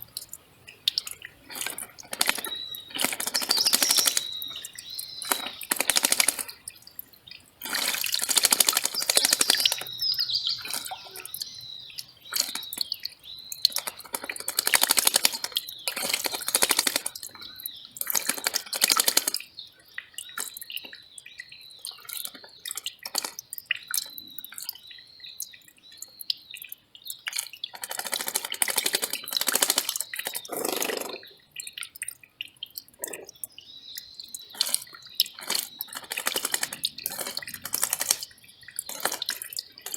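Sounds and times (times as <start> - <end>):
stream splashing over rocks: 0.0 - 11.6, 13.7 - 17.4, 27.3 - 31.1
bird chirping: 0.0 - 39.9.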